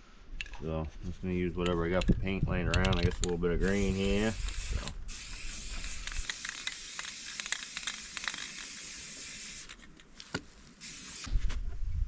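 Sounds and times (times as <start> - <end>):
spray can hissing: 3.6 - 9.7, 10.8 - 11.3.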